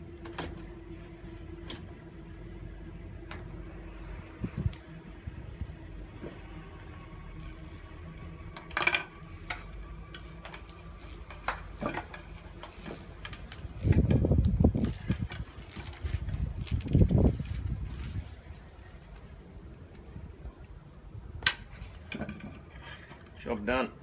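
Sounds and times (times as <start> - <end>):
insulation being cut and peeled: 4.4 - 19.2
heavy rustling handling noise: 8.8 - 19.8.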